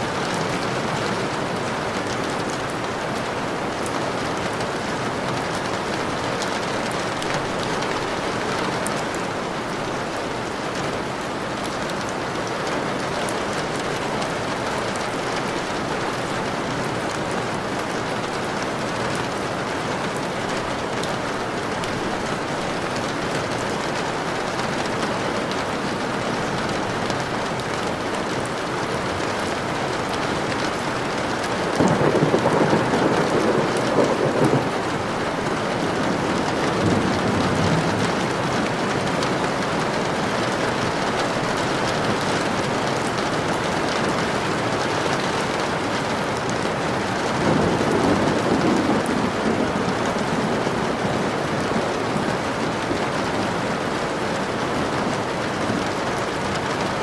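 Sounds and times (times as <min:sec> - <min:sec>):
steady rainfall: 0:00.0 - 0:57.0
thunder rolling: 0:31.7 - 0:41.4, 0:47.3 - 0:51.5.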